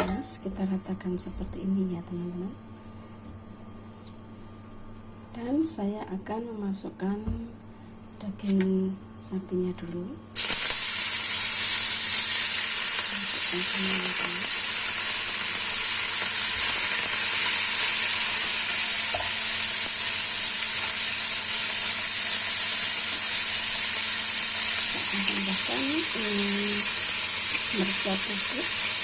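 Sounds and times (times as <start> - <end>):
meat sizzling in hot oil: 10.4 - 29.0.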